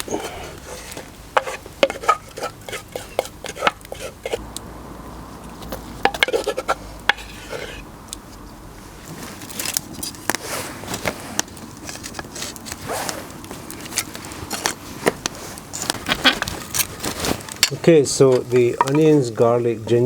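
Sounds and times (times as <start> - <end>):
spoon stirring in clay pot: 0.0 - 4.4, 5.5 - 8.5.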